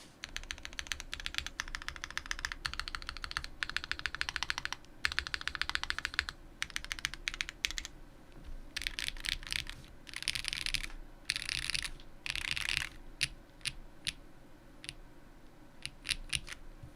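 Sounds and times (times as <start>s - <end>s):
mechanical keyboard typing: 0.2s - 7.9s, 8.8s - 14.2s, 15.8s - 16.6s.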